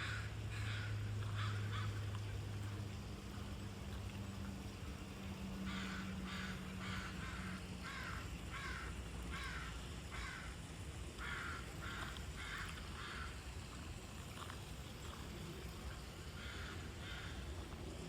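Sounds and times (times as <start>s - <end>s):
crow cawing: 0.0s - 2.0s, 5.6s - 10.6s, 11.2s - 13.4s, 16.4s - 17.4s.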